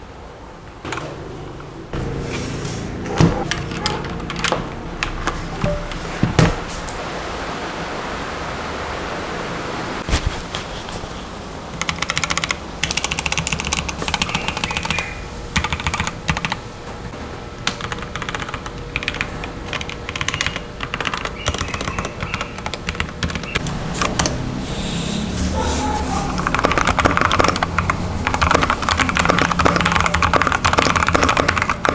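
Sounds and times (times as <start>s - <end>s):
mechanical keyboard typing: 3.4s - 7.0s, 11.8s - 16.6s, 17.6s - 24.4s, 25.8s - 31.9s.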